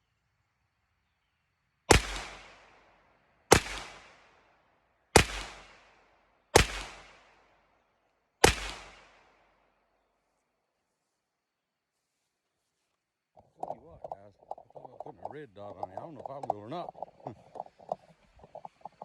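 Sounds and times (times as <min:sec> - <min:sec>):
pistol shots with echo: 0:01.9 - 0:02.8, 0:03.5 - 0:04.4, 0:05.2 - 0:07.4, 0:08.4 - 0:09.5.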